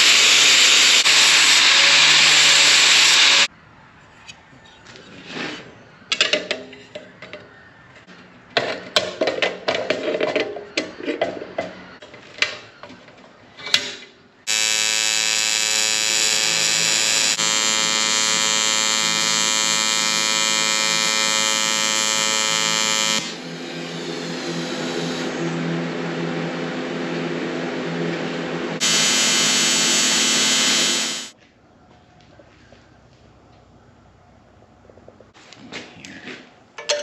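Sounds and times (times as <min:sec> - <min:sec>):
loud electric buzz: 0:00.0 - 0:03.5, 0:14.5 - 0:31.4.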